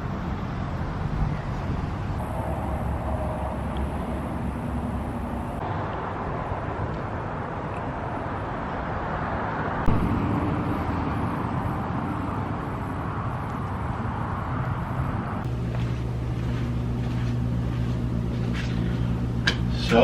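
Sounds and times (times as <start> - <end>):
vehicle and road noise: 0.0 - 20.0
low rumble: 9.9 - 13.1.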